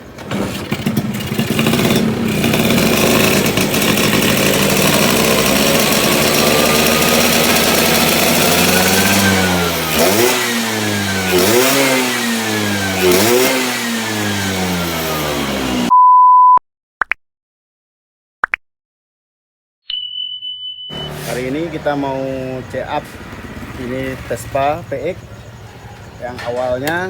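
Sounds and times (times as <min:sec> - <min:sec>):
scooter engine revving: 0:00.0 - 0:15.9, 0:20.9 - 0:27.0.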